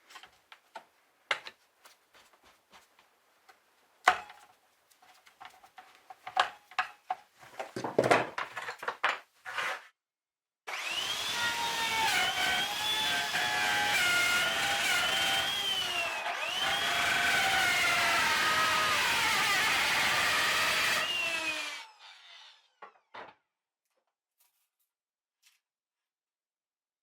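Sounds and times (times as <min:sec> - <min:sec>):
power tool whining: 0:10.7 - 0:22.8.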